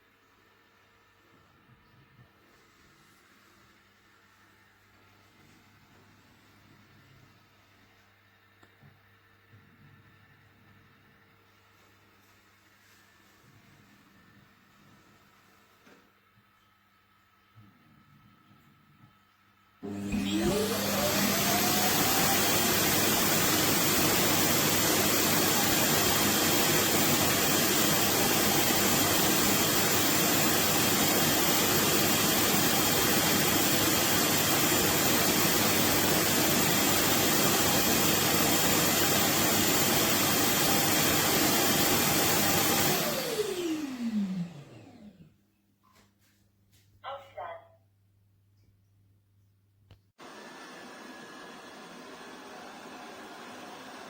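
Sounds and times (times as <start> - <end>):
robot vacuum suction motor: 19.8 - 45.2.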